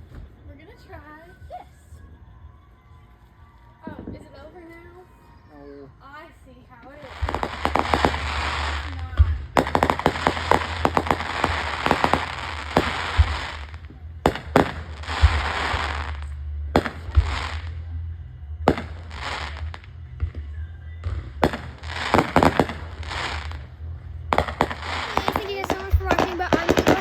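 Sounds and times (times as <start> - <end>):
fireworks crackling hiss: 7.0 - 18.1, 18.7 - 27.0
fireworks cracking and banging: 7.0 - 27.0.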